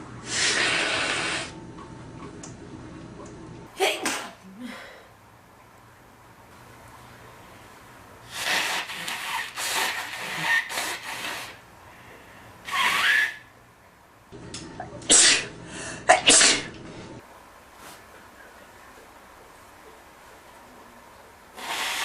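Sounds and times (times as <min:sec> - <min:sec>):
man sneezing: 0:15.1 - 0:15.5, 0:16.1 - 0:16.7.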